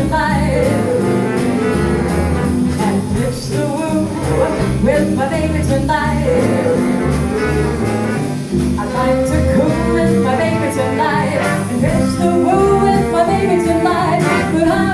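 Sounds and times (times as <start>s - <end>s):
big band jazz with singer: 0.0s - 14.9s
steady bass line: 0.0s - 14.9s.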